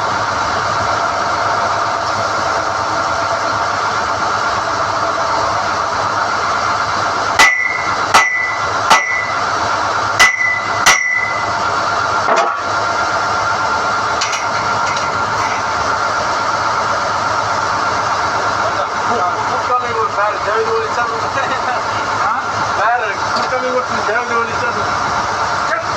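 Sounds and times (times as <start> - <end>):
drilling rig running: 0.0 - 25.9
metal clanks: 7.4 - 9.4, 10.2 - 11.5, 14.2 - 15.7.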